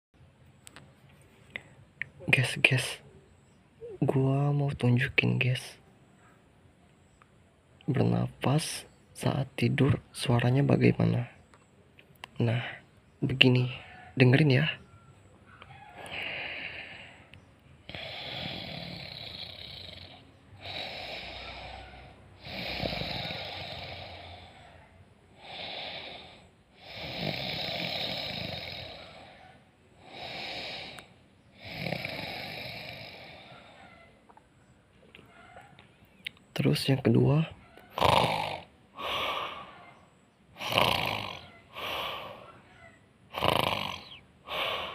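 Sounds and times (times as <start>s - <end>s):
person snoring: 16.0s - 33.9s, 37.9s - 39.9s, 40.6s - 42.6s, 43.3s - 44.9s.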